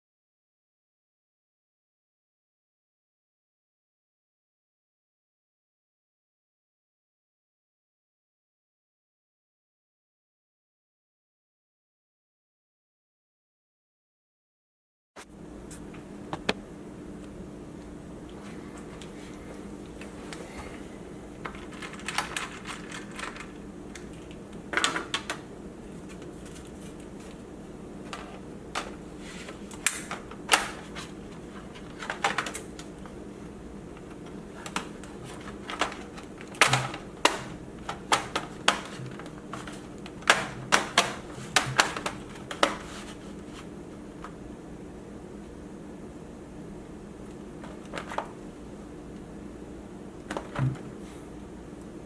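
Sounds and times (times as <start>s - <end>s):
steady low hum: 15.2s - 52.0s.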